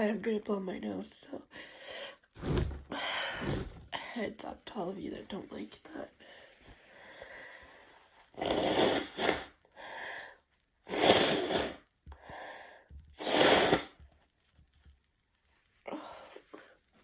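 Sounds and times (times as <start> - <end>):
person blowing nose: 2.4 - 3.9, 8.4 - 9.6, 10.9 - 11.9, 13.2 - 14.0.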